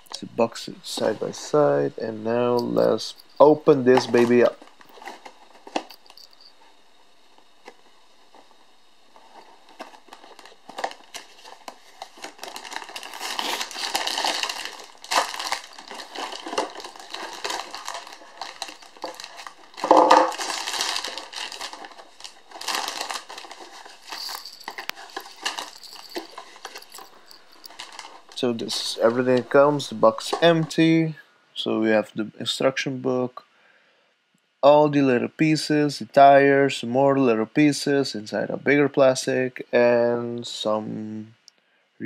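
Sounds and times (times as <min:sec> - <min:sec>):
plastic bags crinkling: 0:00.9 - 0:06.7, 0:07.4 - 0:30.9.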